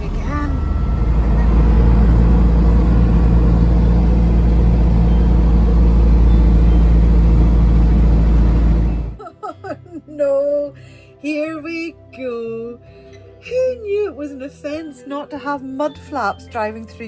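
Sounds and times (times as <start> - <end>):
low road rumble: 0.0 - 9.2
truck engine drone: 0.0 - 9.2.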